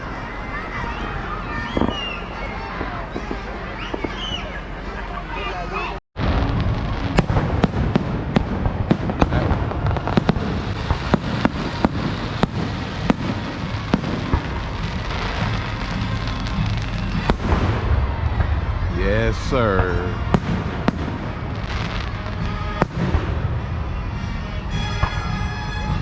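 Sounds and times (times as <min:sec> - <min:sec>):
fireworks popping and crackling: 0:01.8 - 0:02.2, 0:06.2 - 0:26.0.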